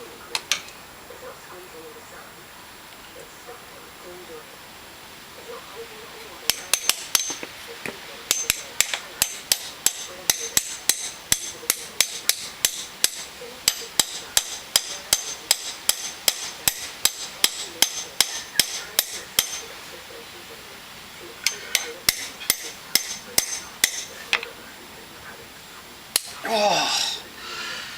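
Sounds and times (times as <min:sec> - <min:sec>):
hammer tapping metal bit: 0:06.5 - 0:19.7, 0:21.4 - 0:24.5, 0:26.1 - 0:26.4.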